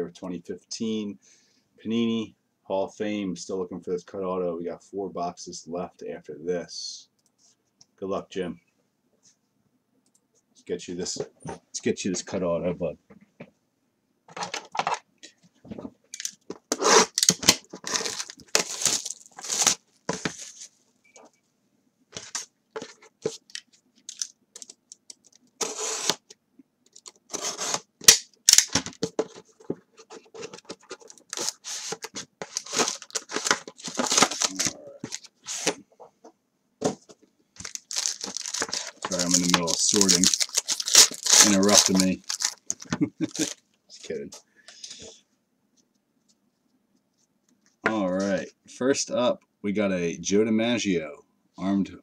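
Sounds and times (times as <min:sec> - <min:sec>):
card packs tearing open: 0:16.2 - 0:20.6, 0:22.2 - 0:26.2, 0:27.0 - 0:29.1, 0:30.3 - 0:35.8, 0:37.6 - 0:43.6
wrappers crinkling: 0:16.2 - 0:20.7, 0:23.2 - 0:26.1, 0:30.6 - 0:35.7, 0:37.6 - 0:43.6
cards being handled: 0:22.2 - 0:26.2, 0:26.9 - 0:35.8, 0:37.6 - 0:43.6.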